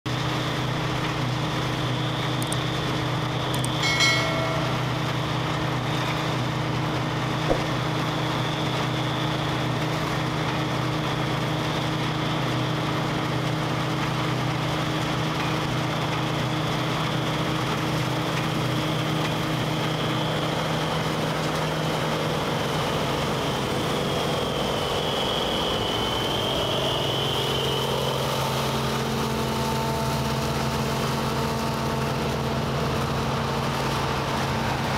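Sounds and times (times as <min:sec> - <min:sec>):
combine harvester engine and machinery: 0:00.1 - 0:34.9
short high tone: 0:03.6 - 0:05.3.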